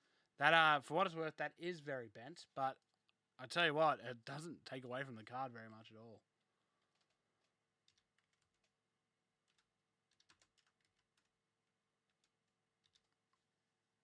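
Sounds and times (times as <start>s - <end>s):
computer keyboard typing clicks: 7.8s - 8.7s, 9.5s - 11.3s.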